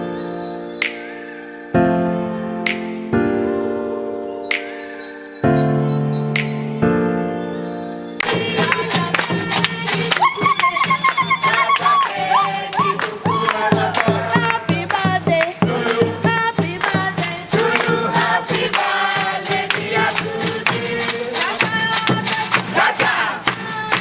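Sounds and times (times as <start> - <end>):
music with steady beat: 0.7 - 3.6, 4.4 - 7.2, 8.2 - 24.0
voices singing: 8.2 - 24.0.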